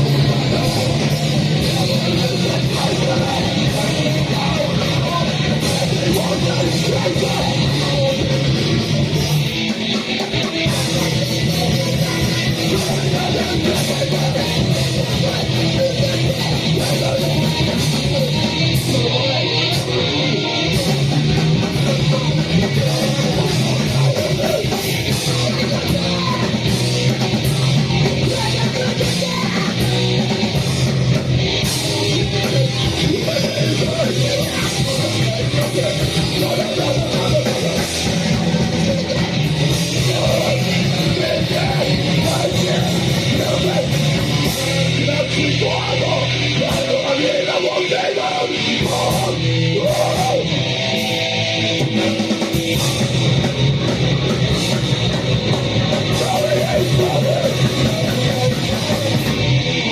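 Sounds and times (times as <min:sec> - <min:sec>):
distorted heavy rock band: 0:00.0 - 0:59.9
shouted vocals: 0:10.3 - 0:51.0, 0:56.0 - 0:59.9.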